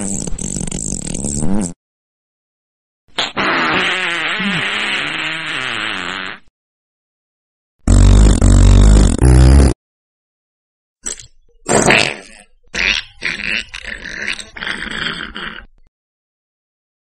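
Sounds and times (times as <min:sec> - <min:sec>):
fart sound effects: 0:00.0 - 0:01.8, 0:03.1 - 0:06.5, 0:07.9 - 0:09.8, 0:11.0 - 0:15.8.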